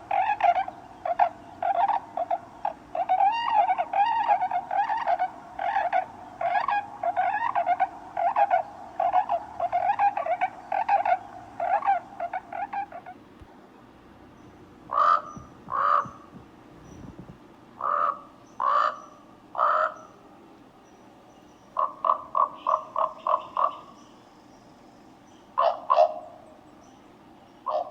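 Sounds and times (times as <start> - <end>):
bird calling rough notes: 0.0 - 13.2
loud separate bird calls: 14.9 - 16.3, 17.8 - 20.2, 21.8 - 24.1, 27.6 - 27.9.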